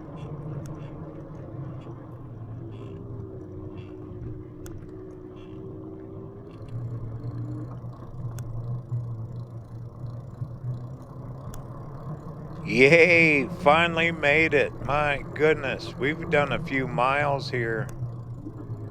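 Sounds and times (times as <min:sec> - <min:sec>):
electric bike motor and tyres hum: 0:00.0 - 0:12.7, 0:16.5 - 0:18.9.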